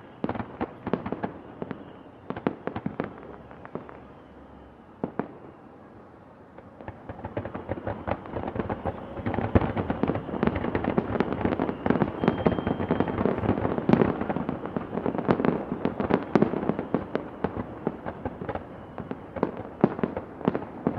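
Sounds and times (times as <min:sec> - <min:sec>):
fireworks and firecrackers crackling: 0:00.0 - 0:20.9.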